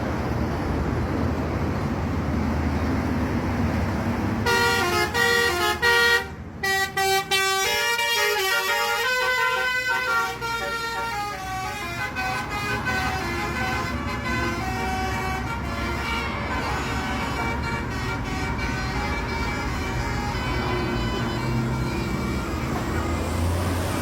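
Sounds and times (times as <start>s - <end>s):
bus engine: 0.0s - 24.0s
road rumble: 0.0s - 24.0s
multi-tone horn playing a tune: 4.4s - 23.2s.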